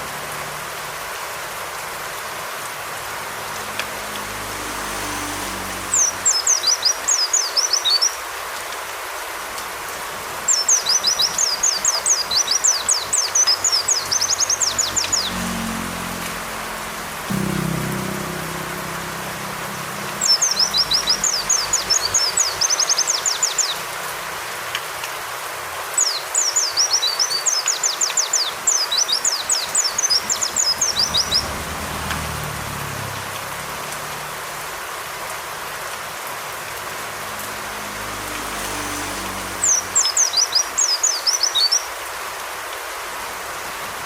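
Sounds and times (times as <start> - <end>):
steady rain-like hiss: 0.0 - 5.1, 7.2 - 13.6, 23.1 - 28.7, 31.8 - 37.6, 41.1 - 44.0
bird song with sharp high notes: 17.3 - 23.8, 39.7 - 41.9.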